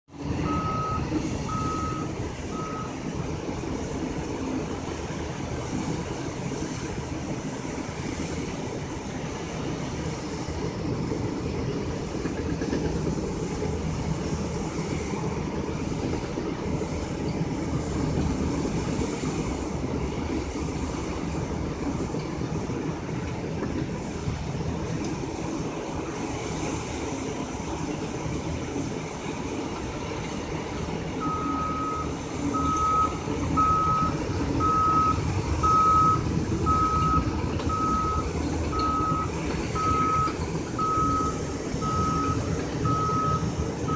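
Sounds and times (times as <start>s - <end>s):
heavy machine engine running: 0.1s - 43.9s
reversing alarm beeps: 0.4s - 3.1s, 31.2s - 43.9s.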